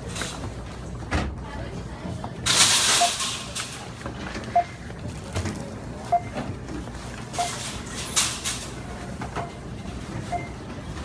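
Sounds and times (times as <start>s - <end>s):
barcode scanner beep: 6.1s - 6.4s, 7.4s - 7.6s, 10.3s - 10.6s.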